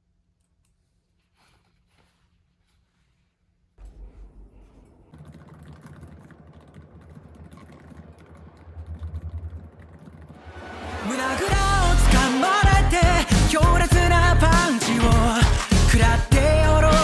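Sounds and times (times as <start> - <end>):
low hum: 3.8 - 16.9.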